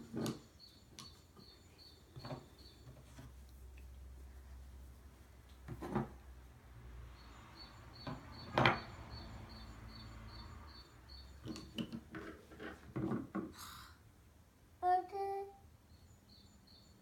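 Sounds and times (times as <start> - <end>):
knocks and clattering taps: 2.1 - 3.4, 5.5 - 6.3, 8.0 - 8.9, 11.4 - 13.6.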